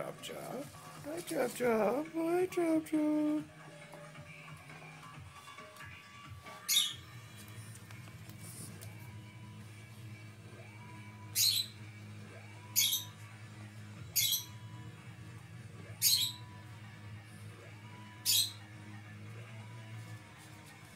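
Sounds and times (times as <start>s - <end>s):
bird squawking: 6.5s - 7.1s, 11.2s - 11.9s, 12.5s - 13.2s, 14.1s - 14.7s, 16.0s - 16.6s, 18.2s - 18.6s.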